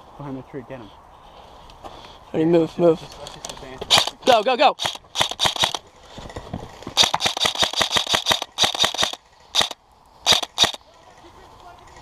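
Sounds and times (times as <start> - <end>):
airsoft guns firing: 3.9 - 5.8, 7.0 - 10.8.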